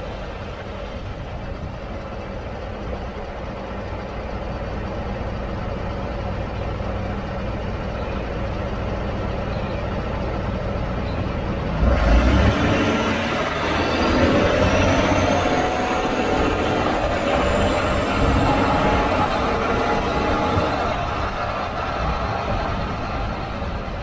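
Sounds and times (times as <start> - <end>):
road noise: 0.0 - 24.0
truck drone and hum: 0.0 - 24.0
rush of noise: 11.6 - 24.0.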